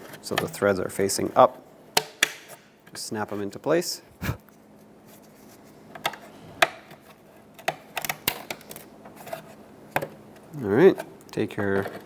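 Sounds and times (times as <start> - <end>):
plastic parts snapping into place: 7.6 - 8.9.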